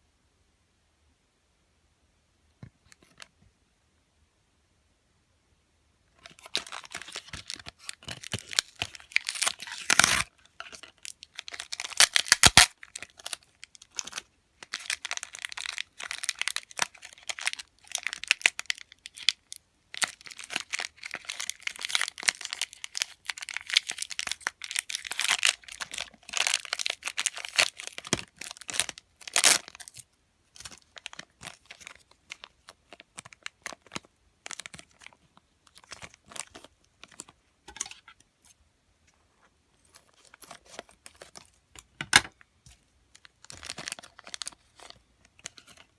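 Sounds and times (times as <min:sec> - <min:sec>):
wrapper ripping: 0:06.2 - 0:19.3, 0:20.0 - 0:30.0, 0:43.4 - 0:45.9
packaging wrappers crinkling: 0:06.2 - 0:38.1, 0:43.1 - 0:45.9.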